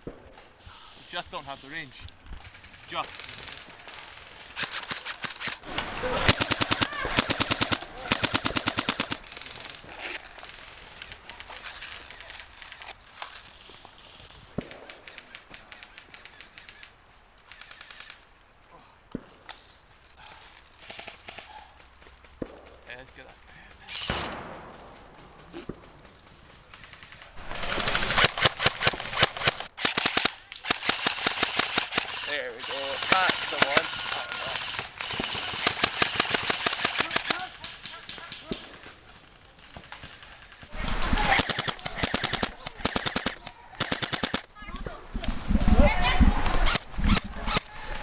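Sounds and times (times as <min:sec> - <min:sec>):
airsoft guns firing bursts: 0:02.5 - 0:11.2, 0:27.4 - 0:38.7, 0:39.8 - 0:48.0.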